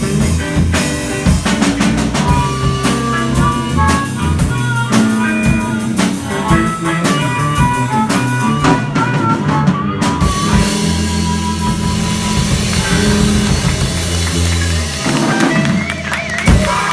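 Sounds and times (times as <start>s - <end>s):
blues band playing: 0.0s - 16.9s.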